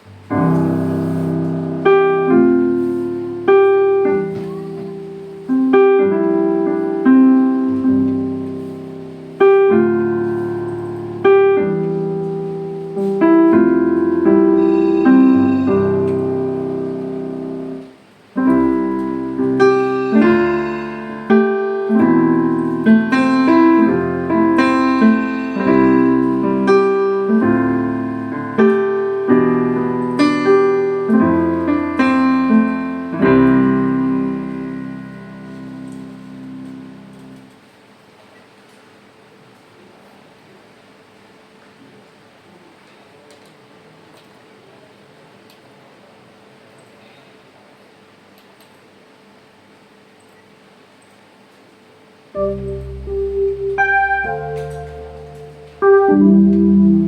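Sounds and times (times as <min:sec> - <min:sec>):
keyboard playing piano chords: 0:00.0 - 0:37.6, 0:52.4 - 0:57.0.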